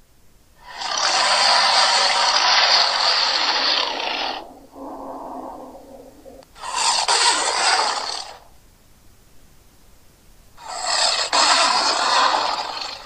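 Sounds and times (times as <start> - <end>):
monster harsh hiss: 0.6 - 8.4
low breathy rasp: 2.8 - 8.0.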